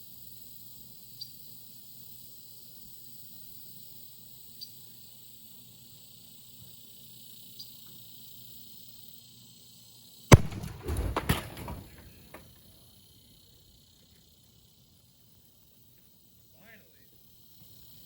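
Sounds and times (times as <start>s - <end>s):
spray can bursting bang: 10.3s - 12.5s.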